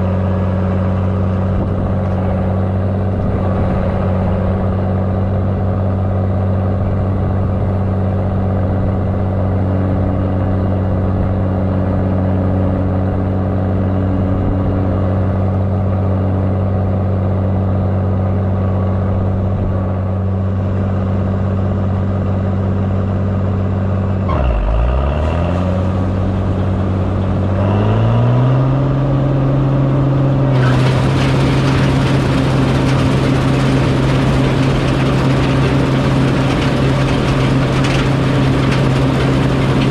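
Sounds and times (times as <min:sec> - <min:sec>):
heavy farm machine engine: 0:00.0 - 0:39.9
loud rushing noise: 0:30.5 - 0:39.9.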